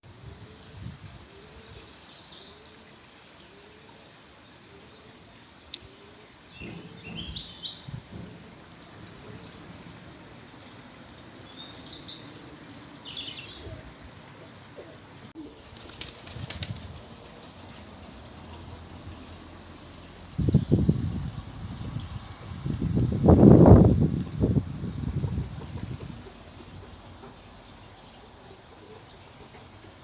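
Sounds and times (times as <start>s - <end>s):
steady background noise: 4.3s - 20.5s
small birds chirping: 5.3s - 18.2s.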